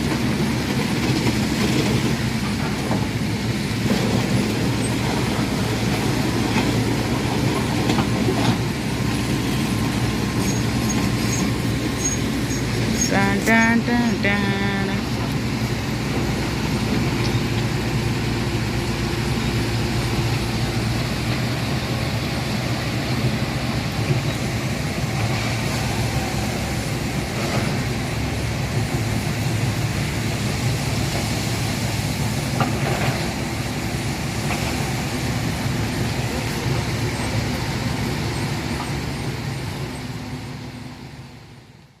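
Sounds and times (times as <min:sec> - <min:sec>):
excavator diesel engine running: 0:00.0 - 0:42.0.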